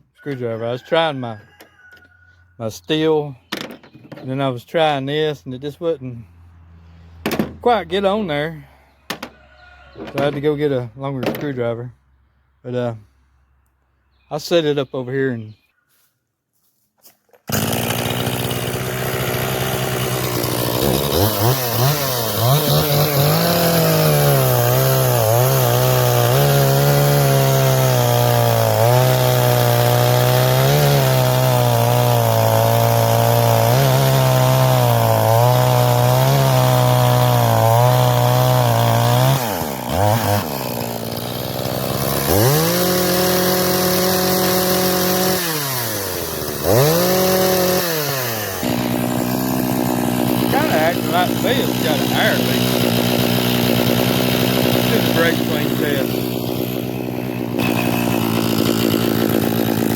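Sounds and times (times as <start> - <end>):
man talking: 0.2 - 1.4, 2.6 - 3.4, 4.2 - 6.3, 7.6 - 8.7, 10.1 - 12.0, 12.6 - 13.1, 14.3 - 15.6, 50.4 - 52.7, 54.9 - 56.2
chainsaw revving: 17.4 - 59.9.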